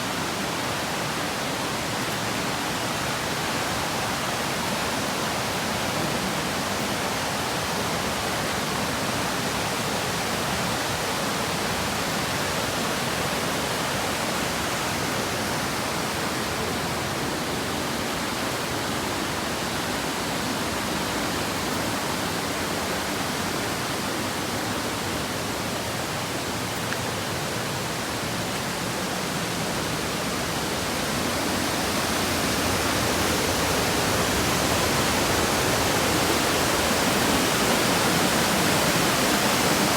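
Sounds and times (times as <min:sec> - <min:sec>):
waterfall rushing: 0:11.3 - 0:39.9.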